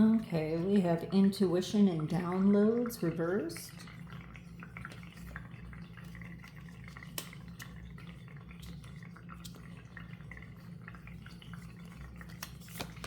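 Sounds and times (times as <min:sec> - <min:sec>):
low electrical hum: 0:00.0 - 0:13.0
cards clicking and tapping: 0:12.3 - 0:13.0.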